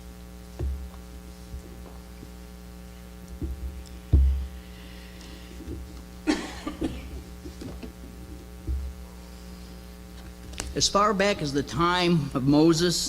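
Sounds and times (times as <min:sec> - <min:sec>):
electrical mains hum: 0:00.0 - 0:13.0
low thumps: 0:00.4 - 0:09.1.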